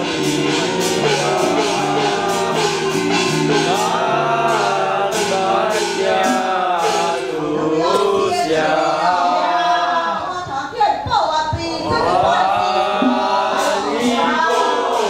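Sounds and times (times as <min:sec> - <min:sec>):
man singing: 0:00.0 - 0:08.8
percussion hits: 0:00.0 - 0:09.4, 0:10.4 - 0:15.0
held low notes: 0:11.5 - 0:14.6.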